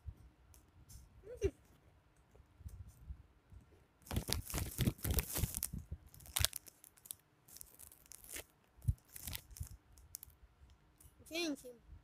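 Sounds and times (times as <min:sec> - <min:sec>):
cookies being crunched: 0:04.1 - 0:10.3.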